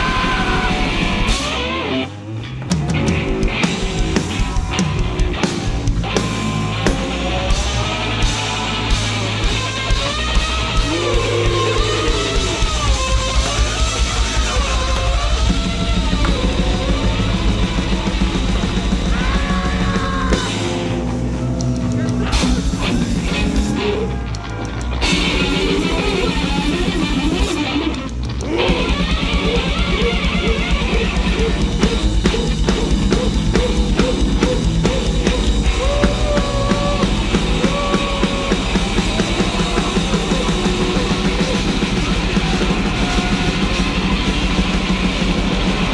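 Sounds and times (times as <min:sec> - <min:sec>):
drums: 0:00.0 - 0:45.9
guitar: 0:00.0 - 0:45.9.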